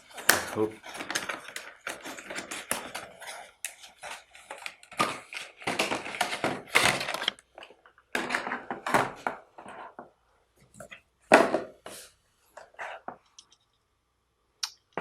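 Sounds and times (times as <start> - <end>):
packaging rustling and scraping: 0.0 - 10.1.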